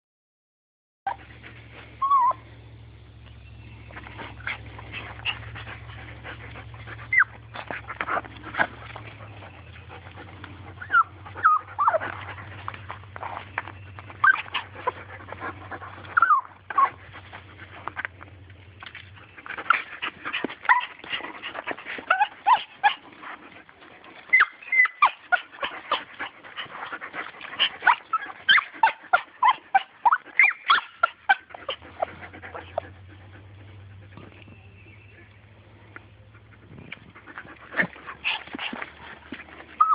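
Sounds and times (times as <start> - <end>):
small dog whining and yipping: 2.0 - 2.4, 7.1 - 7.4, 10.8 - 12.2, 14.0 - 15.0, 16.1 - 17.0, 20.6 - 21.0, 22.0 - 23.0, 24.3 - 26.0, 27.6 - 32.9.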